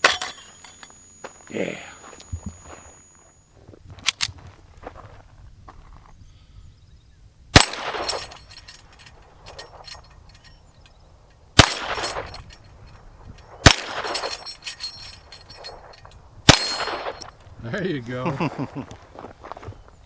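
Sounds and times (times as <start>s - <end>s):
steel target clanging: 0.0s - 3.1s, 7.6s - 17.4s
gunshots: 7.5s - 8.3s, 11.6s - 12.4s, 13.6s - 14.3s.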